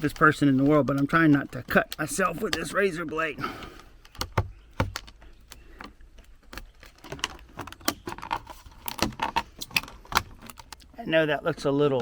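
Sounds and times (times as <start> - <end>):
knife cutting plastic: 6.5 - 10.9.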